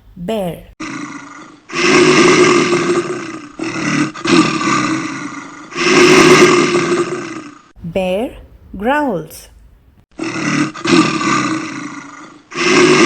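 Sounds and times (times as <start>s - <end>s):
bear growling: 0.8s - 7.8s, 10.1s - 13.0s.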